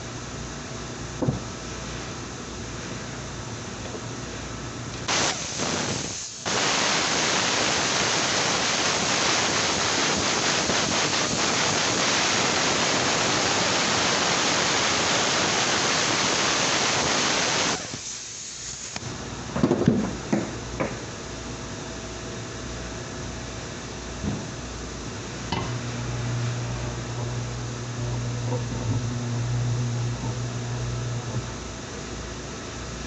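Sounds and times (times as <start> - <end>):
loud rushing hiss: 5.0 - 19.0.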